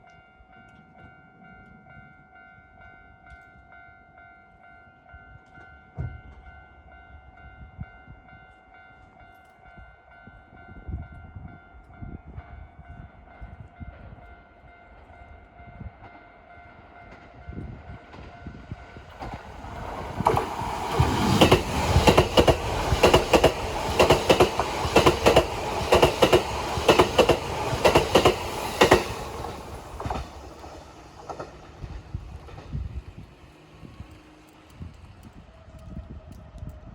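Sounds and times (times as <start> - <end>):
level-crossing warning bell: 0.0 - 31.4
train passing at speed: 7.2 - 36.9
train wheels clacking on rails: 17.0 - 33.0.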